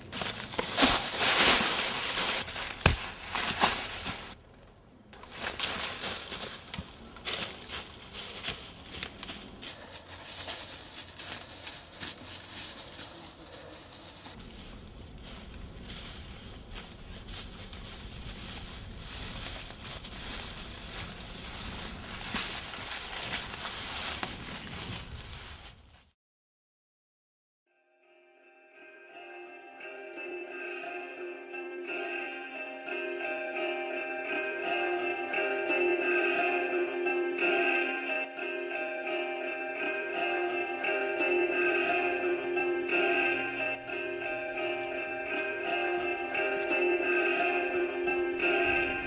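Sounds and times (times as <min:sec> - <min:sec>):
dry leaves crunching: 0:00.0 - 0:04.4, 0:05.1 - 0:26.0, 0:41.8 - 0:49.0.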